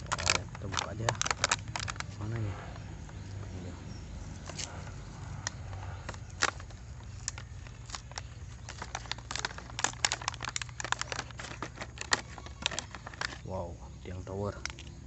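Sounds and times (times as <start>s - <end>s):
plastic toy parts clicking: 0.0s - 2.1s, 5.4s - 13.4s, 14.6s - 14.9s.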